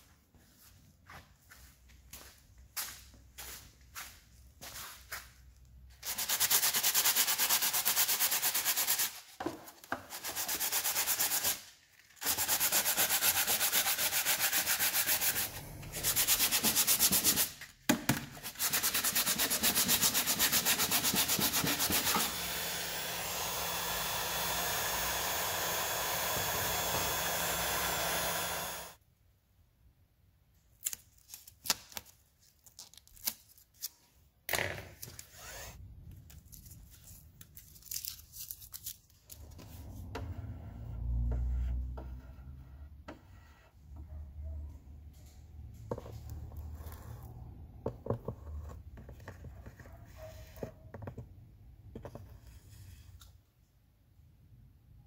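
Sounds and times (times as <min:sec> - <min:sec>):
sanding: 0:06.0 - 0:09.2, 0:10.1 - 0:11.6, 0:12.2 - 0:17.6, 0:18.4 - 0:29.0.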